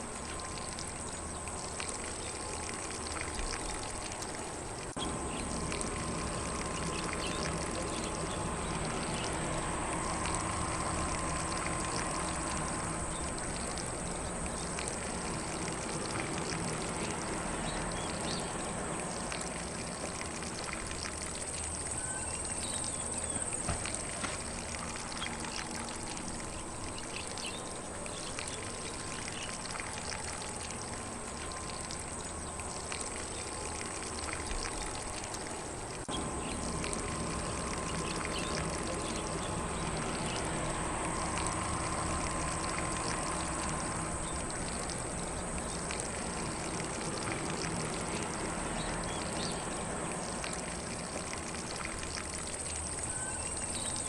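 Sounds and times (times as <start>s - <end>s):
lawn sprinkler spraying water: 0.0s - 54.0s
faint bird chirps: 22.0s - 23.7s, 53.1s - 54.0s.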